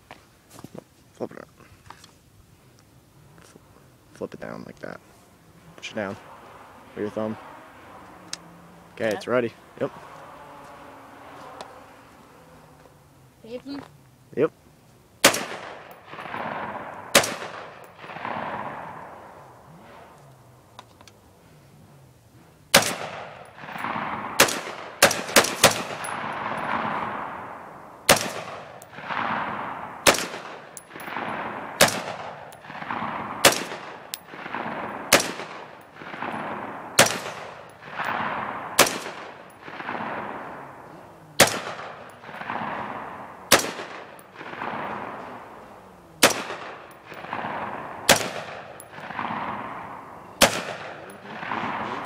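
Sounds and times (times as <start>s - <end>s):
rifle shots with rolling echo: 15.2s - 52.0s.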